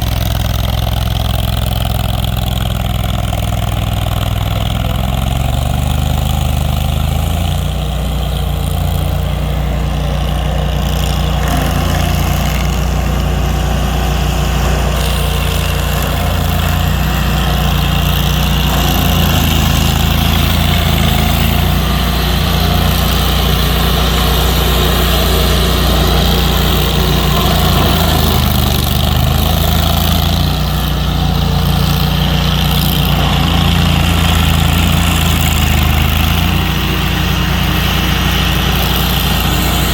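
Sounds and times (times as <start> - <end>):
large engine idling: 0.0 - 39.9.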